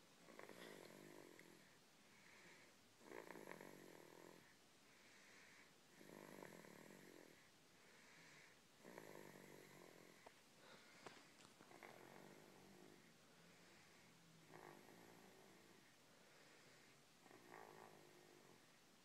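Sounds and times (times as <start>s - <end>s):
child snoring: 0.2s - 4.5s, 5.2s - 10.3s, 11.7s - 13.1s, 13.7s - 15.9s, 16.5s - 18.7s.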